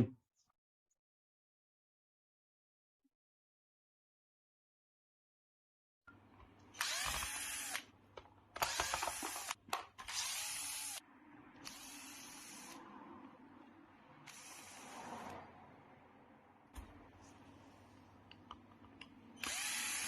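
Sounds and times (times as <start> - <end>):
power screwdriver running: 6.8 - 7.8, 8.6 - 11.0, 11.6 - 12.8, 14.2 - 15.1, 19.4 - 20.0.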